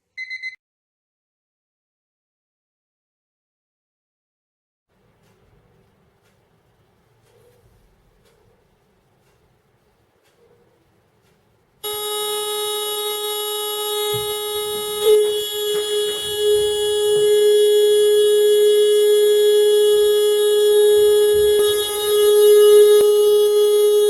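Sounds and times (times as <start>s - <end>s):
motorcycle horn blaring: 11.8s - 24.0s.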